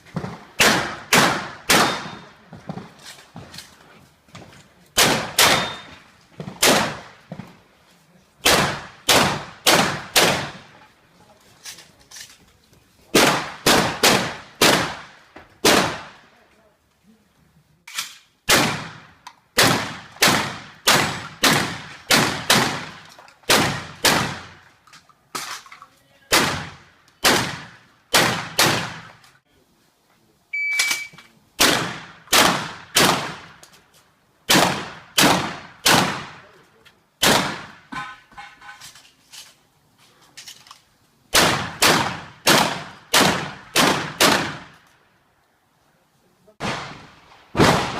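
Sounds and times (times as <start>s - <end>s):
shotgun firing: 0.2s - 2.9s, 5.0s - 7.2s, 8.4s - 10.7s, 13.1s - 16.2s, 18.5s - 24.6s, 26.3s - 29.2s, 31.6s - 33.6s, 34.5s - 36.4s, 37.2s - 38.0s, 41.3s - 44.8s, 46.6s - 47.9s.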